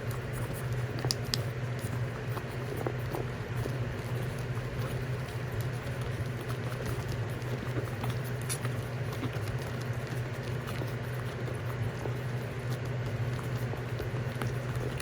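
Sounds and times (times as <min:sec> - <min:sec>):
puppies' paws pattering and scratching: 0:00.0 - 0:15.0
steady low hum: 0:00.0 - 0:15.0.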